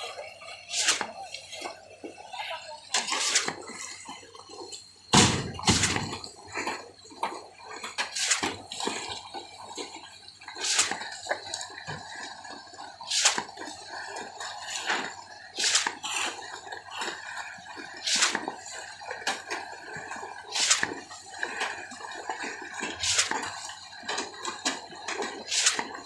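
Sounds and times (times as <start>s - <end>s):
wet concrete slapping and splashing: 0.7s - 1.5s, 3.0s - 3.9s, 5.1s - 9.8s, 10.6s - 12.1s, 13.1s - 17.2s, 17.8s - 26.0s.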